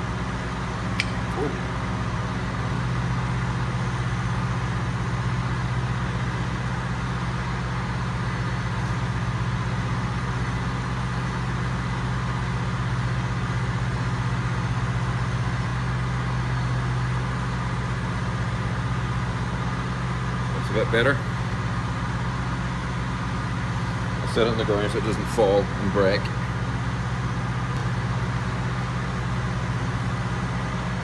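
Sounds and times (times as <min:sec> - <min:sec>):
pumps droning: 0:00.0 - 0:15.9, 0:23.0 - 0:31.0.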